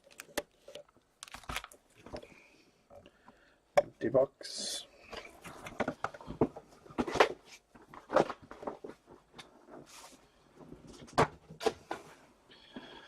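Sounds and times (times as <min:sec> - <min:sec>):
soft rustling of packs: 0:00.0 - 0:02.8.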